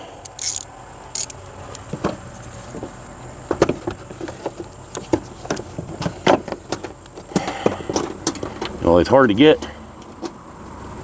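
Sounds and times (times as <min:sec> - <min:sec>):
hand ratchet clicking: 0:00.2 - 0:01.4.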